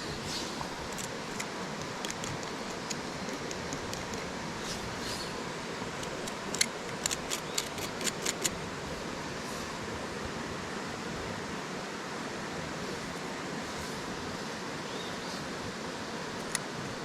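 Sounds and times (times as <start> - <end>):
sharp clicks: 0.9 - 4.3, 6.0 - 8.6.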